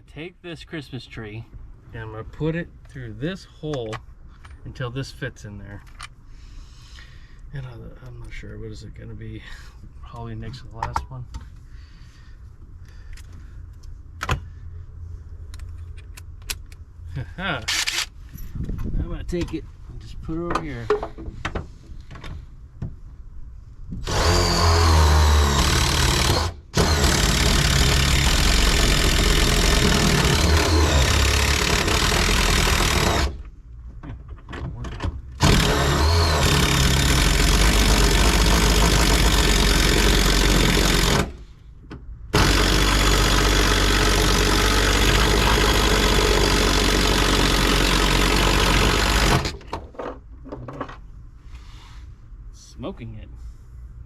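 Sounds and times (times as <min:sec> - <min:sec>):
electric drill boring metal: 0:24.0 - 0:33.4, 0:35.4 - 0:41.3, 0:42.4 - 0:49.6.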